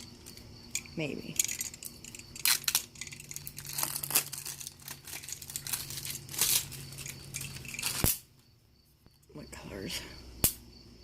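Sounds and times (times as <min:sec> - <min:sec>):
packaging crinkling and tearing: 0:02.4 - 0:08.3.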